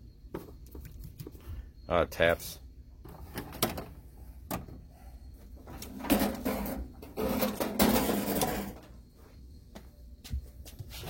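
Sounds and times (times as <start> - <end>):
metal drawer sliding and rattling: 5.8 - 8.8.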